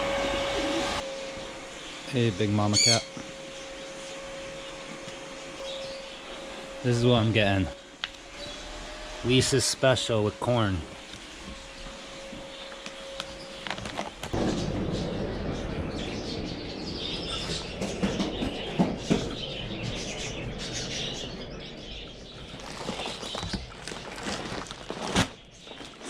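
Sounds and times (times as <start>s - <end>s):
small birds chirping: 1.7s - 7.2s, 11.0s - 26.0s
rustling: 22.4s - 26.0s.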